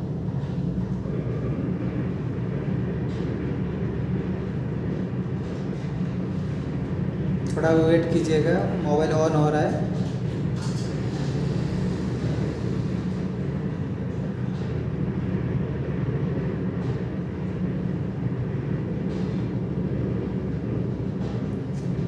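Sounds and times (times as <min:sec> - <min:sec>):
low background hum and rumble: 0:00.0 - 0:22.0.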